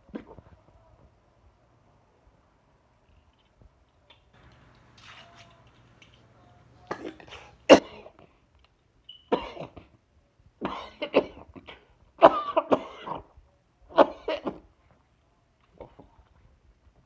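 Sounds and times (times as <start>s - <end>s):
person coughing: 7.0s - 8.1s, 9.4s - 9.8s, 10.6s - 13.3s, 14.0s - 14.6s.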